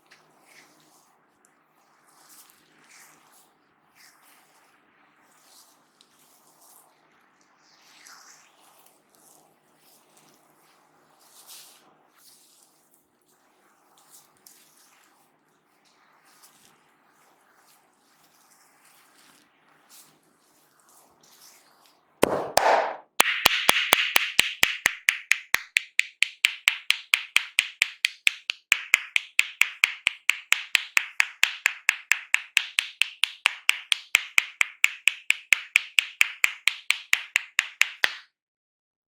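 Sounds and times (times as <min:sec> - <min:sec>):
hands tapping on head: 0:22.2 - 0:38.2.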